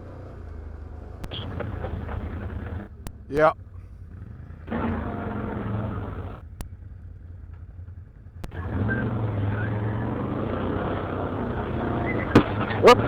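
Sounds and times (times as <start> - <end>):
atv engine revving and idling: 0.0 - 13.0
sharp clicks: 1.2 - 3.5, 8.4 - 13.0.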